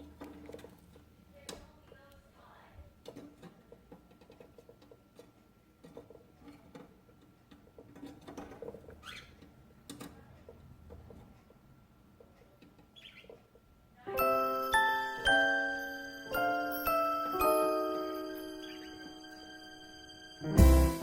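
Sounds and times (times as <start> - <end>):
light clicks taps and scratching: 0.0 - 2.2, 3.0 - 13.7
cockatiel chirping: 13.0 - 13.3, 18.3 - 19.3
tinkling music tune: 14.1 - 21.0.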